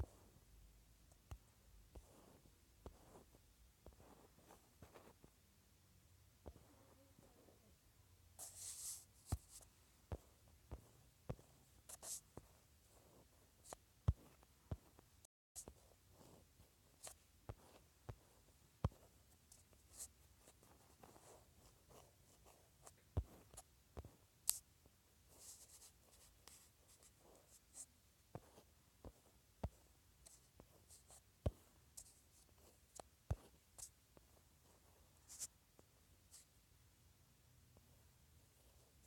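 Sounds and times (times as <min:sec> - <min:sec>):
pen scratching strokes: 0:01.1 - 0:05.3, 0:08.4 - 0:15.0, 0:15.6 - 0:24.6, 0:25.3 - 0:35.6.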